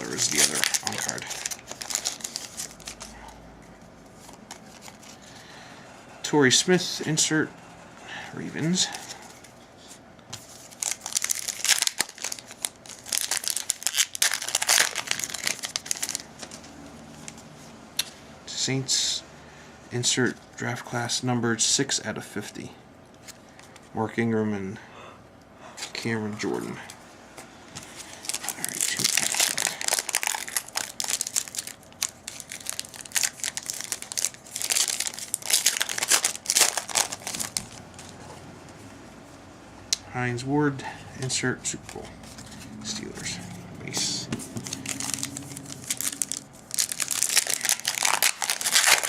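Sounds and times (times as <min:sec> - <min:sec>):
wrapper crinkling and tearing: 0:00.0 - 0:03.2, 0:10.5 - 0:16.6, 0:28.0 - 0:38.1, 0:44.5 - 0:49.0.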